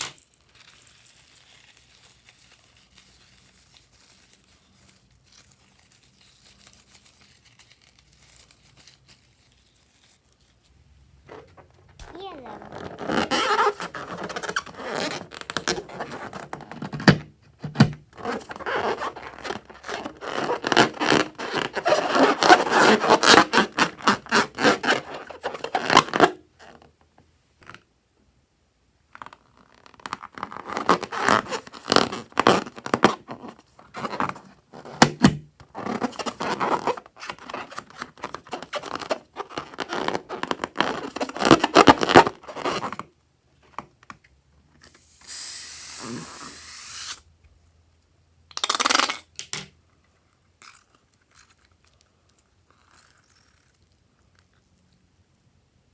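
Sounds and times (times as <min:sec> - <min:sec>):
slime crackling and scraping: 0:00.0 - 0:16.9, 0:18.2 - 0:26.5, 0:29.1 - 0:35.0, 0:35.6 - 0:43.1.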